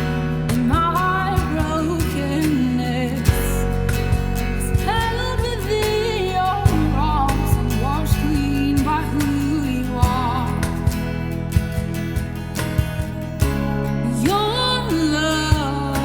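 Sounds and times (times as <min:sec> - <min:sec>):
band drums bass and guitar: 0:03.3 - 0:14.5.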